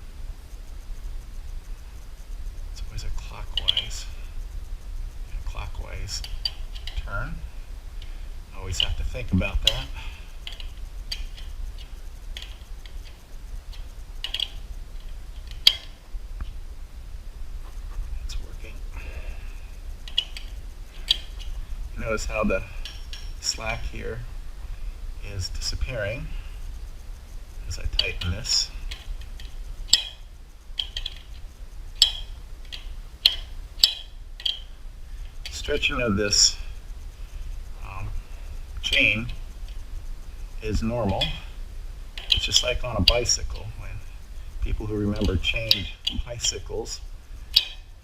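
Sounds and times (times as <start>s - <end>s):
steady low hum: 0.0s - 48.0s
metal tool clicks: 8.7s - 16.0s, 20.0s - 23.9s, 27.7s - 34.7s, 42.2s - 43.7s, 47.4s - 48.0s.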